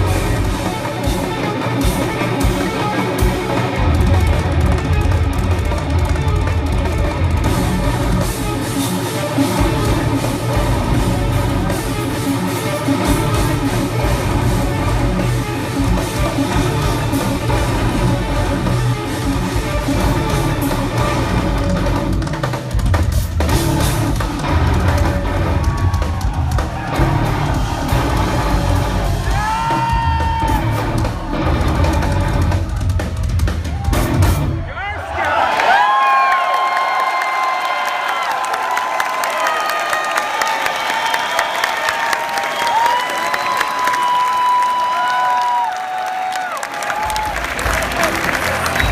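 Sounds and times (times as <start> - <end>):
electric guitars: 0.0 - 34.6
drums: 0.0 - 48.9.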